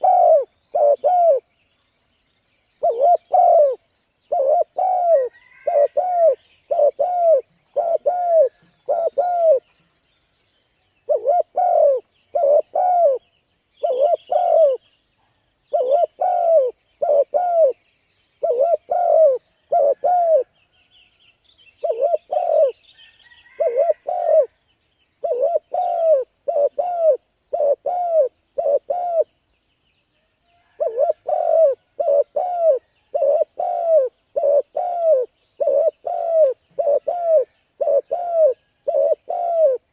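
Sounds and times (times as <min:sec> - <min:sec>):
dove cooing: 0:00.0 - 0:01.5, 0:02.8 - 0:09.7, 0:11.0 - 0:13.2, 0:13.8 - 0:14.8, 0:15.7 - 0:17.8, 0:18.4 - 0:20.6, 0:21.8 - 0:22.8, 0:23.4 - 0:24.6, 0:25.2 - 0:29.3, 0:30.7 - 0:39.9
small birds chirping: 0:00.0 - 0:39.9.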